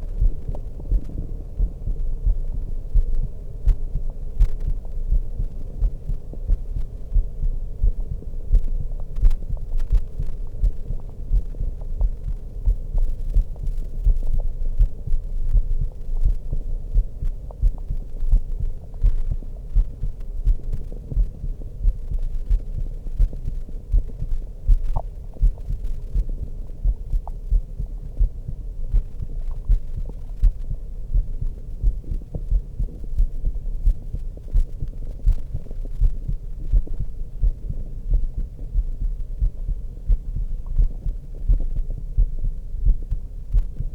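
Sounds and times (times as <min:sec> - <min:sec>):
heartbeat through stethoscope: 0:00.0 - 0:43.9
low ambient hum: 0:00.0 - 0:43.9.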